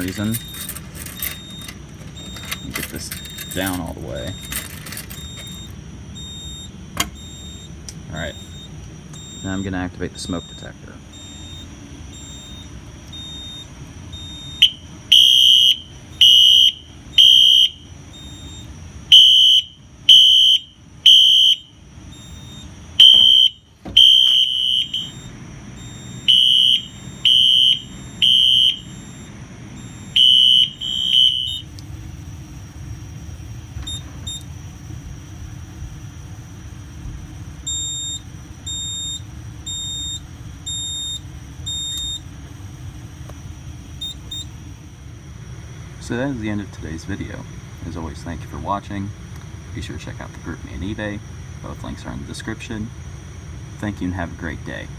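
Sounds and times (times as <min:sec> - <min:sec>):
faint high beeping: 0:00.0 - 0:14.8
fire alarm high beeps: 0:00.0 - 0:31.8, 0:33.8 - 0:34.5, 0:37.6 - 0:42.3, 0:44.0 - 0:44.6.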